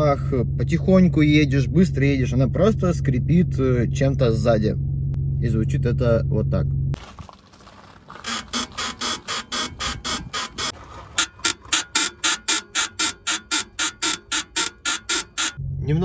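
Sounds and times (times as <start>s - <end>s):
car suspension squeaking: 7.7s - 15.6s.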